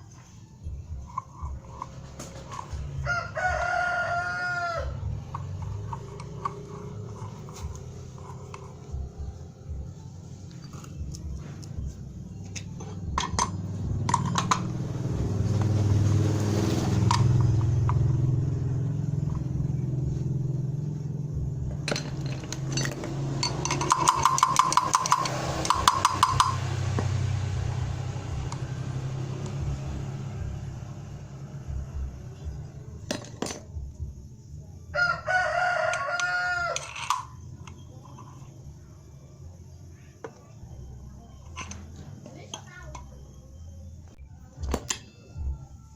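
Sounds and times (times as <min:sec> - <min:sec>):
brush cutter engine running: 0:21.6 - 0:30.3
rapid metallic clicking: 0:21.8 - 0:26.8.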